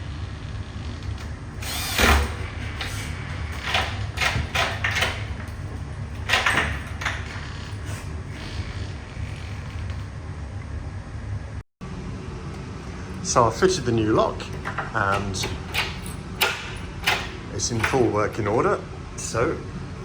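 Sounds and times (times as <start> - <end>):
mortice lock scraping and clunking: 1.0 - 10.0, 14.5 - 18.6.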